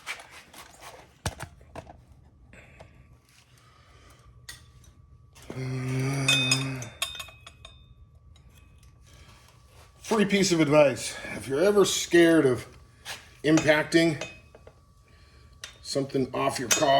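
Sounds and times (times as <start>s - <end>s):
impact wrench hammering: 13.5s - 14.5s.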